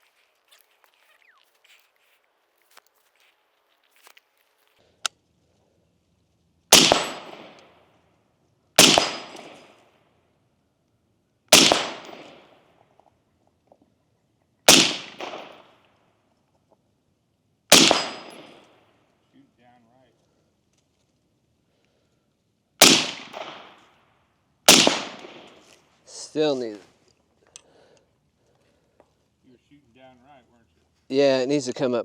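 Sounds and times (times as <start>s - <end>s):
gunshots with echo: 6.7s - 7.8s, 8.8s - 9.8s, 11.5s - 12.5s, 14.7s - 15.8s, 17.7s - 18.7s, 22.8s - 23.9s, 24.7s - 25.7s.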